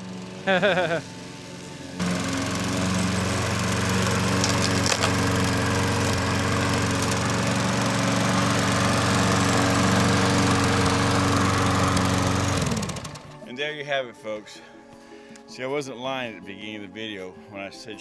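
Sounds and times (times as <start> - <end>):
lawn mower engine running: 0.0 - 13.6.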